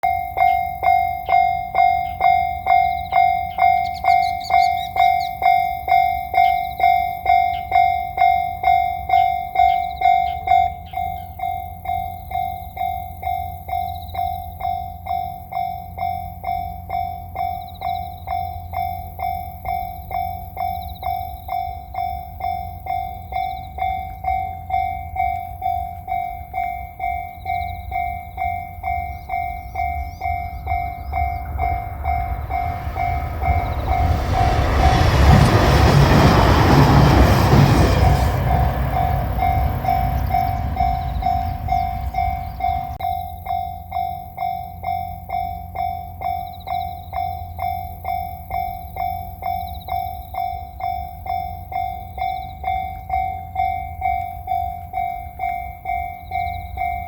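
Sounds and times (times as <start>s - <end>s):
diesel train passing: 0.0s - 57.0s
level crossing bell ringing: 14.8s - 57.0s.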